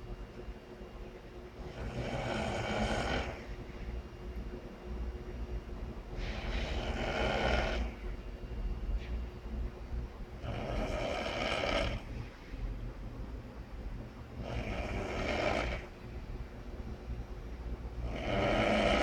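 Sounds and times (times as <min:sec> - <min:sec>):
person snoring: 0:01.6 - 0:03.5, 0:06.2 - 0:08.0, 0:10.4 - 0:12.1, 0:14.4 - 0:16.0, 0:18.0 - 0:19.0.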